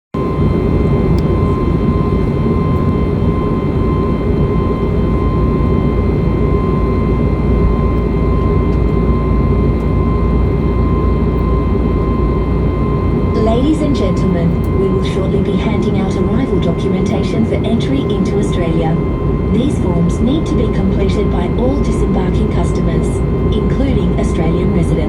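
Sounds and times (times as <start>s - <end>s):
jet engine rumble in cabin: 0.2s - 25.0s
thin steady hum: 9.3s - 25.0s.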